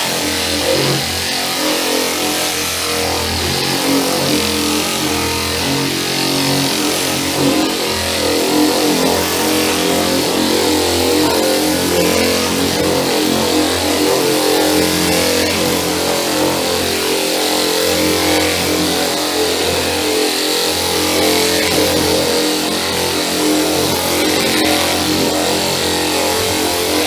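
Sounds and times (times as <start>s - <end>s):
air sander humming and hissing: 0.0s - 27.0s.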